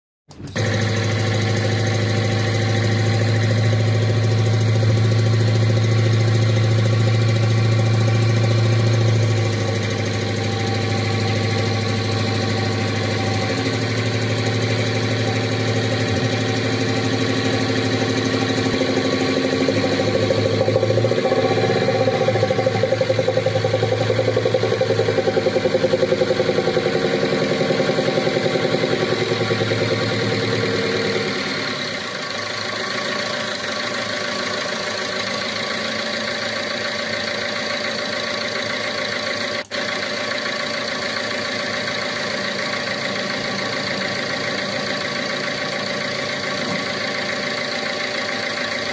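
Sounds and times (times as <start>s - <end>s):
car engine idling with knock: 0.6s - 48.9s.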